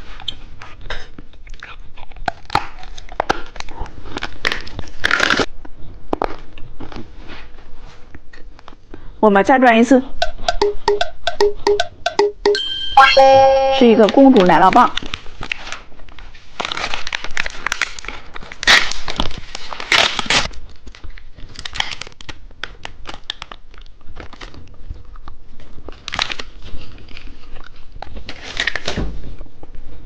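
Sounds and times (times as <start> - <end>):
plastic wrapper tearing and crinkling: 2.2 - 5.5, 15.0 - 29.0.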